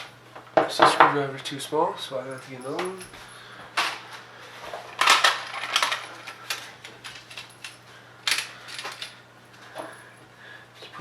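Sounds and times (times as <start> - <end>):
metal tools clinking: 5.0 - 9.2.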